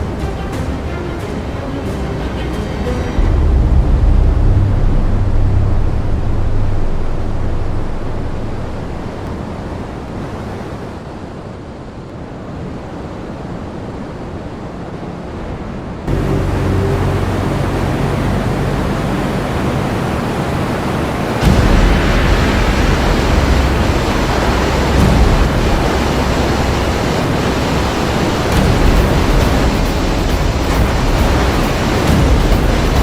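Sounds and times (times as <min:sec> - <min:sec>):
low rumble: 0:00.0 - 0:09.4, 0:16.1 - 0:33.0
wind buffeting microphone: 0:00.0 - 0:33.0.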